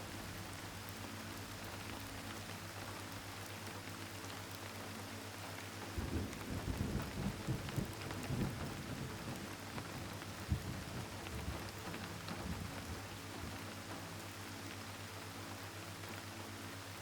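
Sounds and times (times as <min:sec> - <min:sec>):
steady rain: 0:00.0 - 0:17.0
thunder rumbling: 0:06.0 - 0:11.6.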